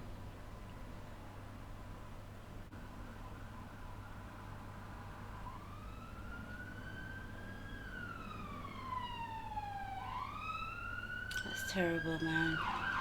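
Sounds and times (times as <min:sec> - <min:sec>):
emergency siren wailing: 0:03.3 - 0:13.0.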